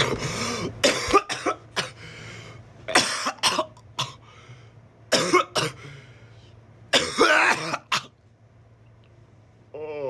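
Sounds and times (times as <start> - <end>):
man coughing hard: 0.0 - 2.1, 2.9 - 4.2, 5.1 - 5.9, 6.9 - 8.2.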